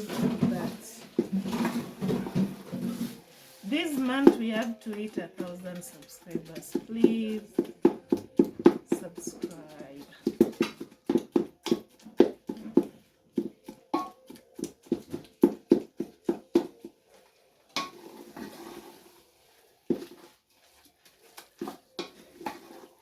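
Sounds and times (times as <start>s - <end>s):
dull pounding thuds in a pot: 0.0s - 17.0s
scraping stir: 0.0s - 23.0s.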